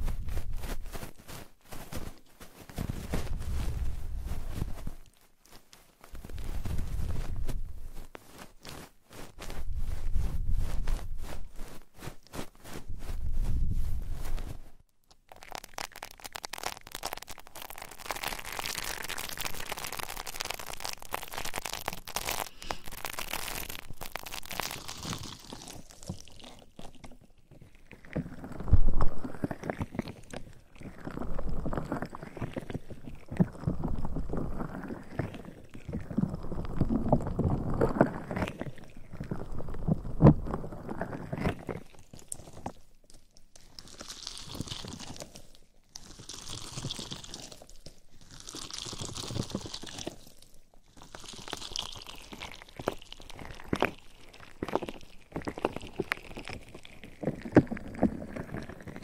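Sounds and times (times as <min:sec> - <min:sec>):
hands rubbing microphone: 0:00.0 - 0:14.8.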